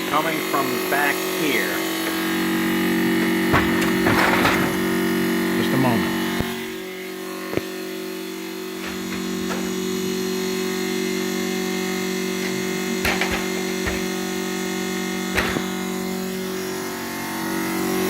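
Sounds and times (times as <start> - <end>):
refrigerator buzzing hum: 0.0 - 18.0.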